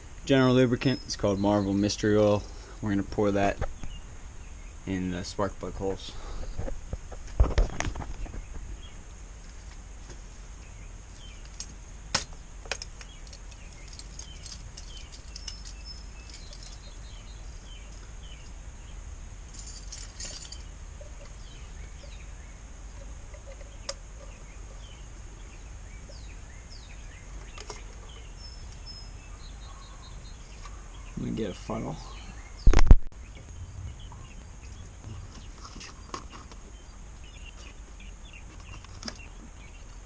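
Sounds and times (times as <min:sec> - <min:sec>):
high insect drone: 0:00.0 - 0:32.6, 0:33.2 - 0:40.0
small birds chirping: 0:00.0 - 0:40.0
metallic clinking: 0:13.3 - 0:17.2, 0:19.5 - 0:21.4
low rumble: 0:33.1 - 0:35.6.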